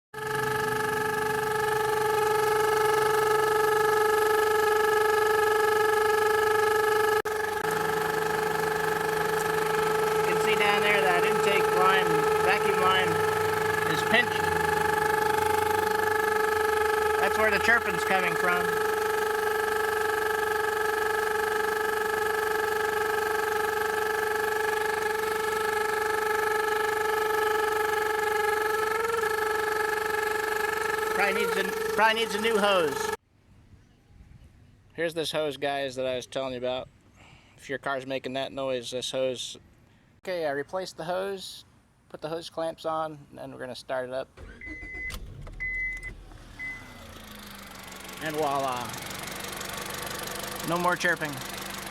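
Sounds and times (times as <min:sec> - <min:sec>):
car engine running: 0:00.2 - 0:33.2, 0:44.4 - 0:51.9.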